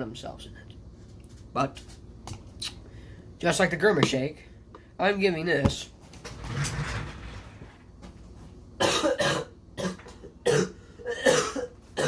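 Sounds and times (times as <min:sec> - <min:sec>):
person coughing: 0:08.8 - 0:12.0.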